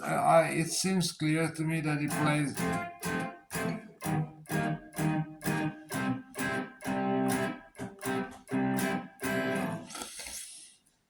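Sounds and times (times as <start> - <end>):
electric guitar chord stabs: 2.1 - 9.9.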